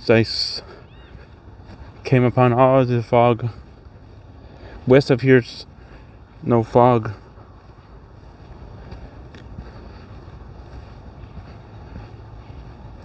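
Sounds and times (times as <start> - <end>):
wind buffeting microphone: 7.1 - 13.0.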